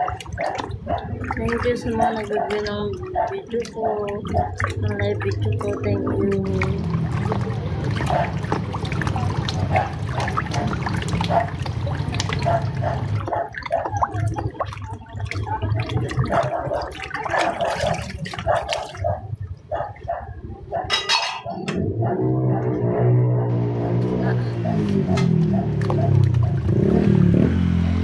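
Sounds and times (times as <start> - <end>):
water running and splashing: 0.0 - 20.1, 24.9 - 27.4
dishes clicking and knocking: 20.8 - 21.9.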